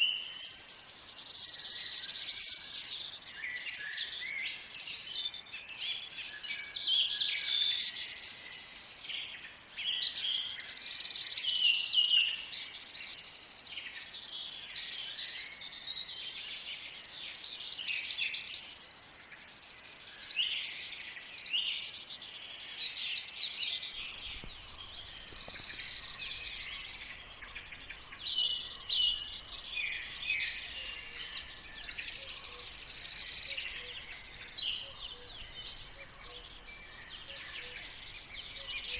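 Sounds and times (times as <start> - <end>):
songbirds singing and chirping: 23.8 - 38.9.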